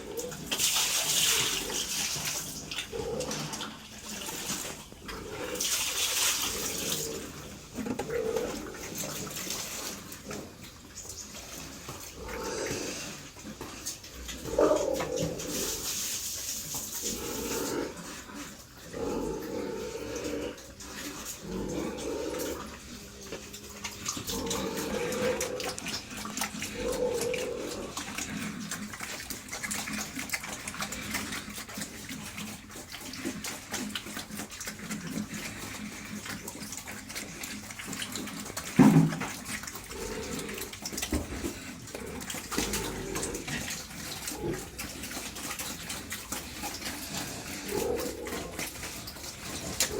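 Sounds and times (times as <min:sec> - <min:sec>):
pigs grunting: 0:00.0 - 0:49.9
watery sloshing: 0:00.0 - 0:49.9.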